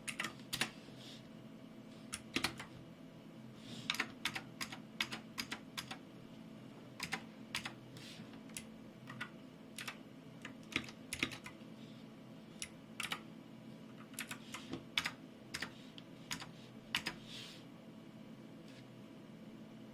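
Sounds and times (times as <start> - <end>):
mechanical keyboard typing clicks: 3.9 - 6.0, 7.0 - 7.8, 8.5 - 11.6, 12.6 - 13.2, 16.3 - 17.2.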